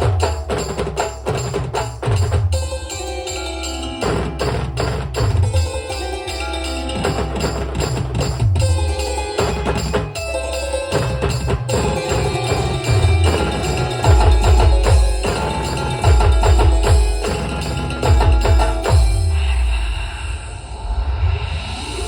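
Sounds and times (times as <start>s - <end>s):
low drum beat: 10.9s - 19.9s.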